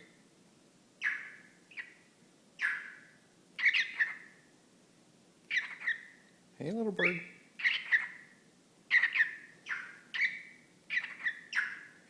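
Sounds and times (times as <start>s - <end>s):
bird chirping: 1.0s - 4.5s, 5.5s - 12.0s
bird mimicking talk: 6.7s - 8.1s.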